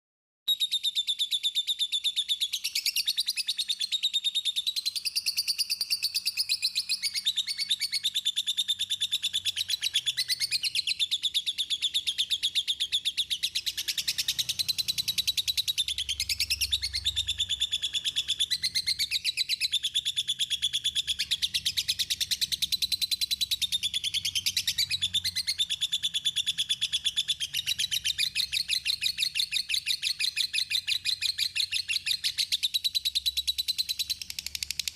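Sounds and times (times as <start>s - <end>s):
songbird chirping and trilling: 0.5s - 34.9s.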